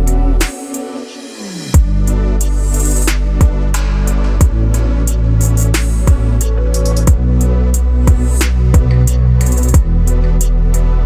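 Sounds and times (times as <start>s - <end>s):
crisp cymbal strokes: 0.0s - 10.9s
electronic music with deep bass: 0.0s - 11.0s
booming drum hits: 3.4s - 4.7s.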